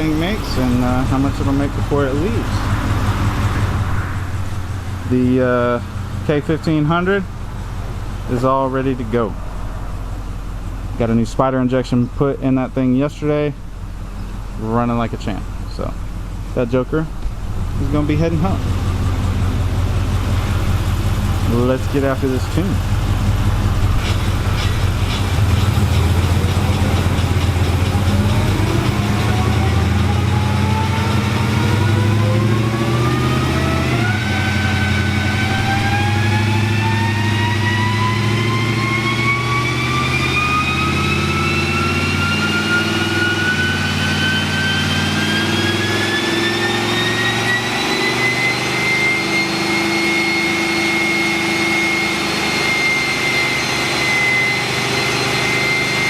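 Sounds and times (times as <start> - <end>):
engine running hard under load: 0.0 - 56.0
whine climbing in pitch: 13.9 - 56.0.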